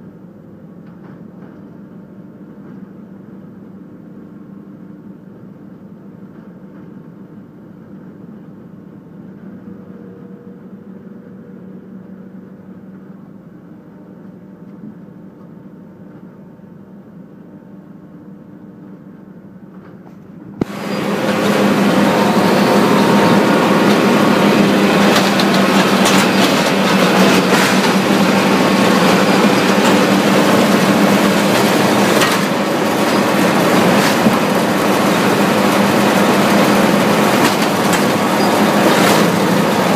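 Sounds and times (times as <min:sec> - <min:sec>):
dense rattling with knocks: 0:20.6 - 0:39.9
machine hum: 0:20.6 - 0:39.9.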